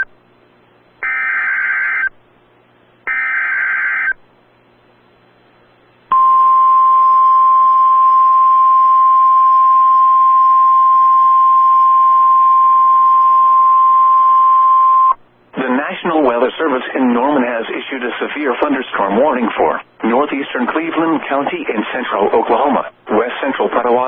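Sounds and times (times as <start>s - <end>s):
steady single-pitch alarm tone: 1.0s - 2.1s, 3.1s - 4.2s, 6.1s - 15.2s.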